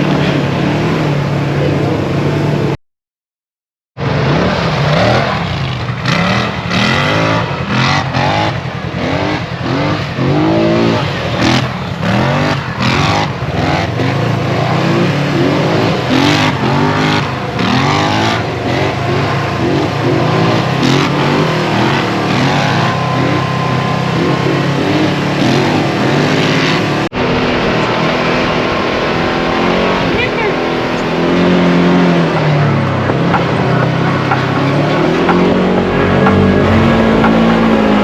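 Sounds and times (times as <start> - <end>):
off-road vehicle engine revving: 0.0 - 2.8, 4.0 - 38.0
sharp knocks: 33.1 - 38.0.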